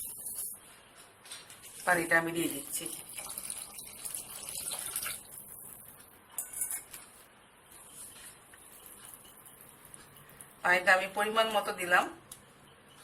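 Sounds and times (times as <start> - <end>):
water pouring into a bowl: 2.4 - 6.0.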